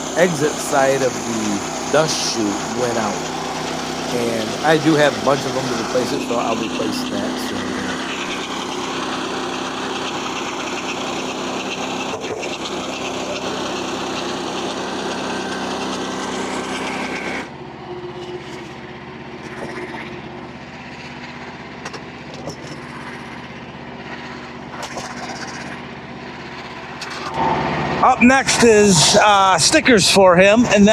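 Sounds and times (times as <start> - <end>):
bandsaw sawing through log: 0.0 - 17.5.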